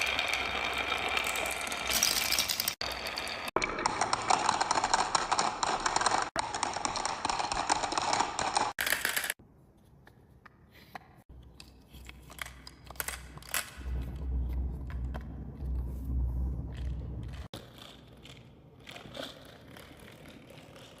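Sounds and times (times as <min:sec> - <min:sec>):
marbles clattering on wooden run: 0:00.0 - 0:09.4
faint low rumble: 0:13.8 - 0:17.5.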